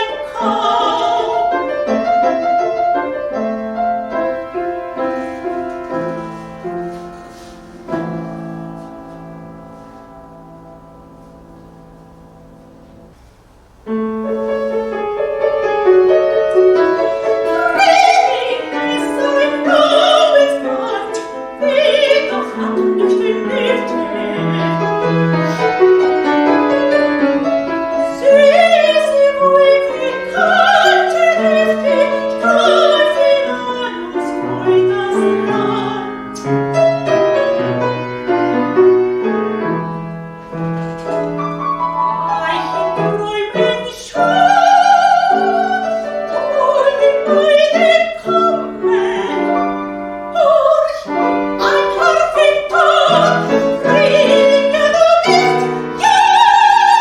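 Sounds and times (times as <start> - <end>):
soprano singing operatically: 0.0 - 3.2, 16.3 - 25.8, 27.9 - 36.6, 42.1 - 57.0
piano accompaniment: 0.0 - 57.0.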